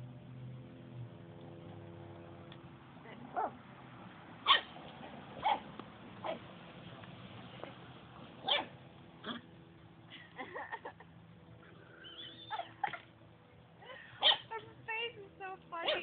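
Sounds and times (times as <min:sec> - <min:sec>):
puppy yipping and barking: 0:04.4 - 0:04.8, 0:05.4 - 0:06.4, 0:08.4 - 0:08.7, 0:14.2 - 0:14.6.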